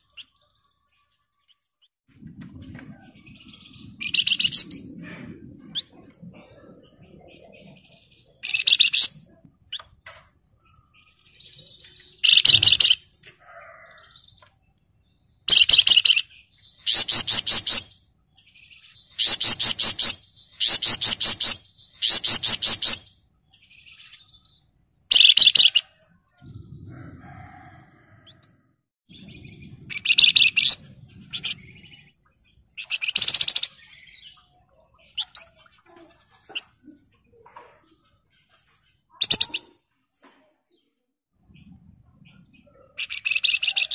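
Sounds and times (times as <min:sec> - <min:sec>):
bird singing rapid trills: 0:10.7 - 0:13.1, 0:29.1 - 0:35.9.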